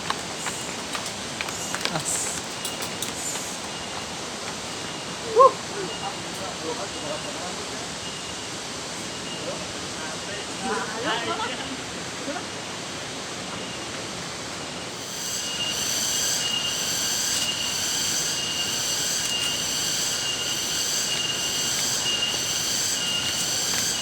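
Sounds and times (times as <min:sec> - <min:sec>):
shrill pulsing drone: 0:15.0 - 0:24.0.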